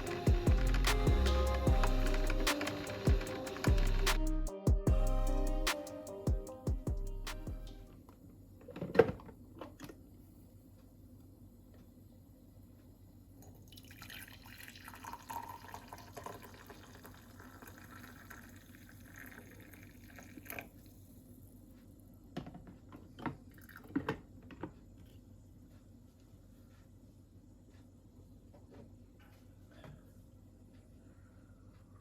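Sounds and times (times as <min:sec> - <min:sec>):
liquid pouring and splashing: 0:13.7 - 0:20.8.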